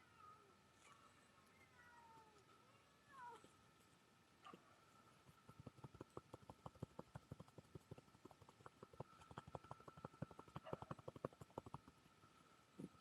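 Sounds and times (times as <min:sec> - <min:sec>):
cat meowing softly: 0:01.6 - 0:03.5
machine patting a cat: 0:05.2 - 0:12.0.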